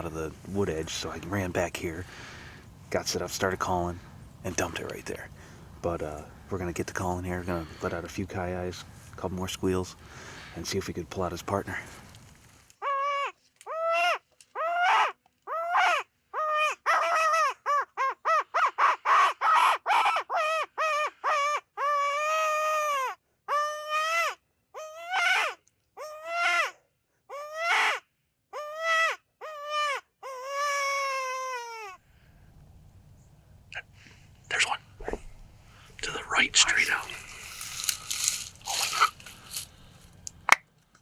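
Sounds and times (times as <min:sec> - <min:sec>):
predator call coyote yips and howls: 0:12.8 - 0:28.0.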